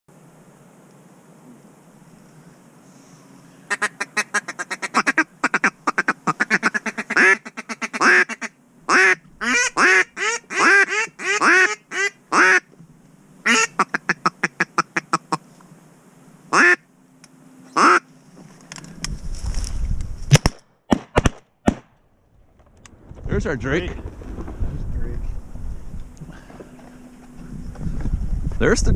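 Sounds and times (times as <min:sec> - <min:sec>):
duck quacking: 0:03.7 - 0:12.7, 0:13.4 - 0:15.4, 0:16.5 - 0:16.8, 0:17.8 - 0:18.0.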